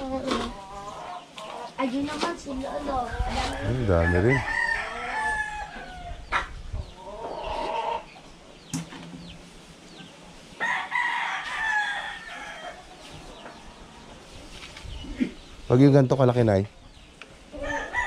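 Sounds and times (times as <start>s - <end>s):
rooster crowing: 3.3s - 6.2s, 10.6s - 12.8s, 17.6s - 18.0s.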